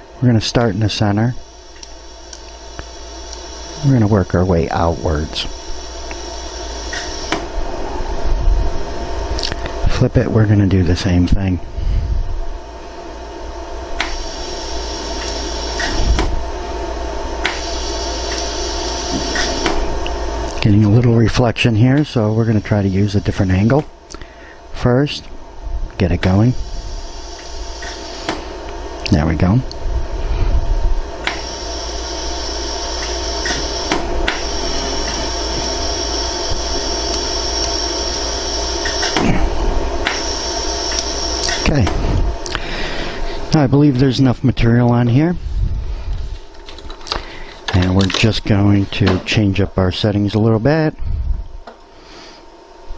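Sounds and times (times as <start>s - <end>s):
machine humming: 0.0s - 52.9s
laser welder sharp clicks: 6.9s - 7.5s, 14.0s - 16.4s, 17.4s - 20.6s, 27.2s - 28.5s, 31.2s - 31.8s, 33.0s - 35.7s, 38.8s - 39.4s, 40.0s - 42.0s.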